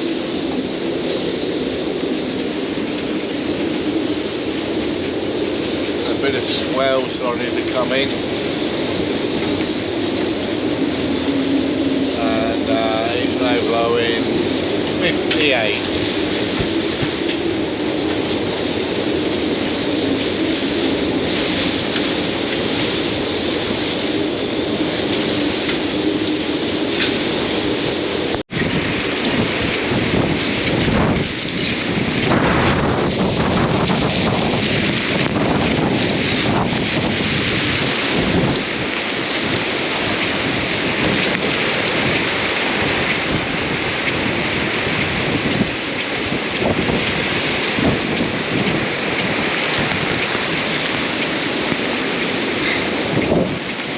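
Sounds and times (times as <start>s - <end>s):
heavy rain: 0.0s - 53.9s
storm wind buffeting microphone: 0.0s - 53.9s.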